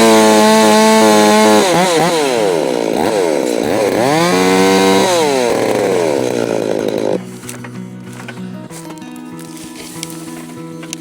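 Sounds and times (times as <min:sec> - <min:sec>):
chainsaw revving: 0:00.0 - 0:08.4.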